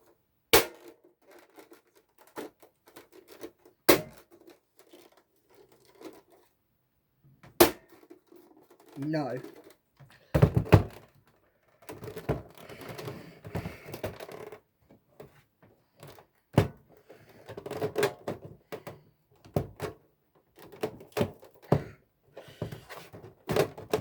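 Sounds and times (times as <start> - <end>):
plastic and metal parts clicking: 0.7 - 6.5, 7.8 - 9.8, 10.6 - 14.6.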